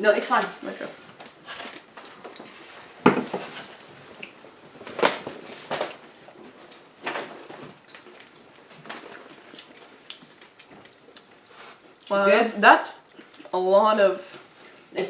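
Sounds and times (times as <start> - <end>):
dishes knocking on a table: 3.0 - 3.4.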